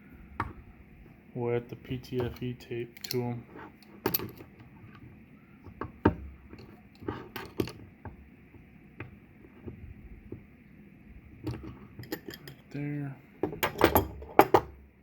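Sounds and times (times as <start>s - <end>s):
metal fittings clicking and knocking: 2.1s - 3.3s.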